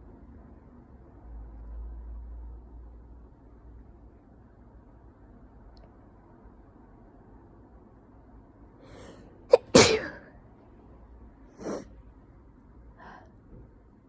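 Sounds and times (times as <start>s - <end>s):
faint breath: 8.8s - 9.4s, 11.6s - 11.9s, 13.0s - 13.6s
person sneezing: 9.5s - 10.3s, 11.6s - 11.8s.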